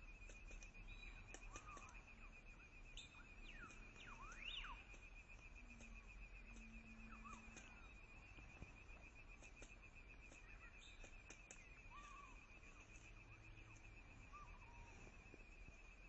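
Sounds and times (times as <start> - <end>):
pulsing insect trill: 0.0 - 16.0
soft sharp clicks: 0.2 - 2.1, 3.4 - 12.0.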